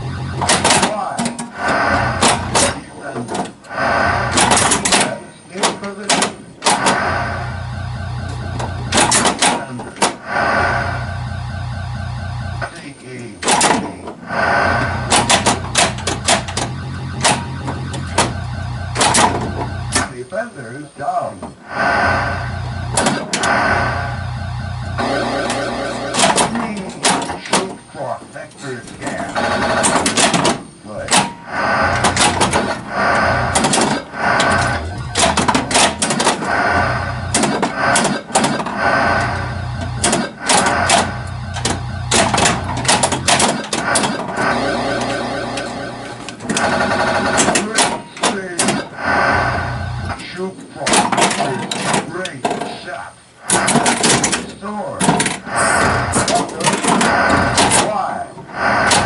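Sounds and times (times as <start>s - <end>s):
pulsing low game sound: 0.0s - 2.8s, 6.8s - 9.4s, 10.2s - 13.1s, 14.2s - 20.2s, 21.6s - 26.5s, 31.2s - 47.6s, 48.8s - 50.2s, 55.4s - 56.4s
electronic sound effects: 0.0s - 2.9s, 6.7s - 13.3s, 14.2s - 20.8s, 21.5s - 26.8s, 30.9s - 47.8s, 48.4s - 50.4s, 55.4s - 59.0s
pinball mechanical clacks: 0.0s - 7.5s, 8.2s - 10.9s, 12.6s - 20.5s, 21.1s - 24.2s, 24.9s - 59.0s.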